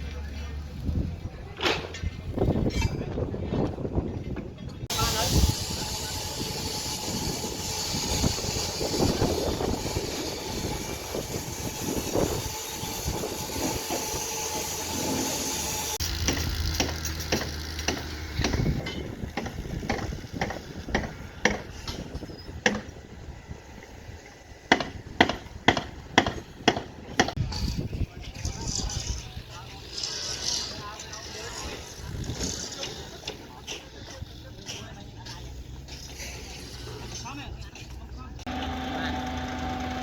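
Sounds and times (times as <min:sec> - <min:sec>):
heavy machinery hissing: 0:04.9 - 0:16.2.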